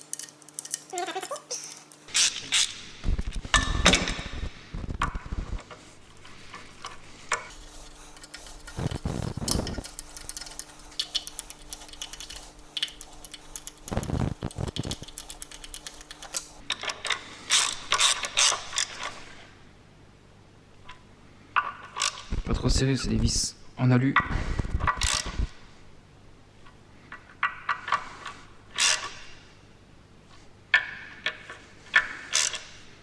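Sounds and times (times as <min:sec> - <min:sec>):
metal tools clinking: 0:00.0 - 0:02.2, 0:07.5 - 0:16.6.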